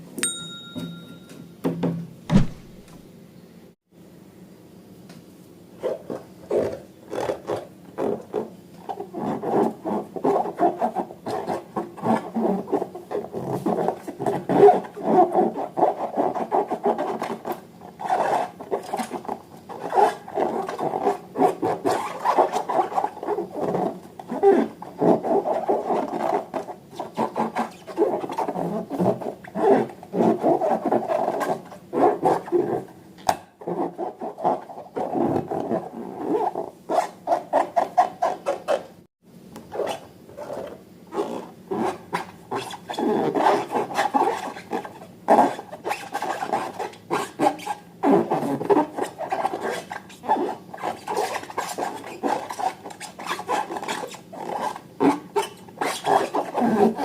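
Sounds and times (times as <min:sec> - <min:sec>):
hands rubbing balloons and slime: 0:05.8 - 0:32.9, 0:39.8 - 0:57.0.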